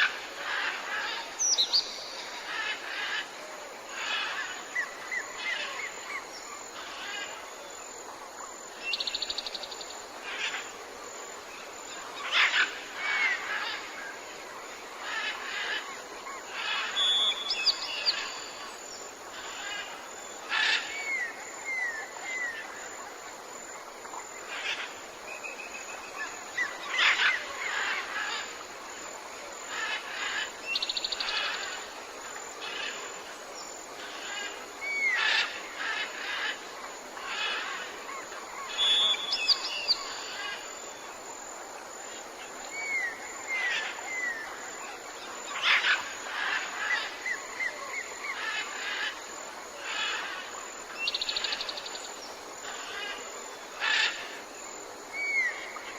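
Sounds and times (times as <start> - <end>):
steady background hiss: 0.0 - 55.9.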